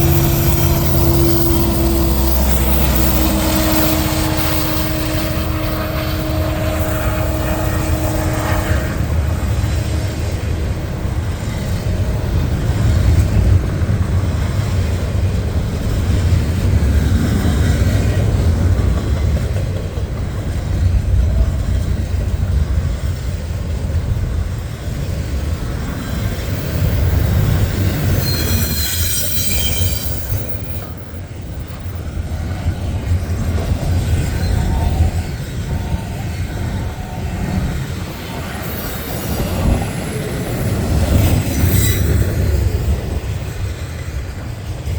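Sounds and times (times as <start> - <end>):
high-pitched wheel squeal: 0.0 - 10.0, 26.5 - 32.0, 38.4 - 42.7
freight train cars rumbling past: 0.0 - 44.9.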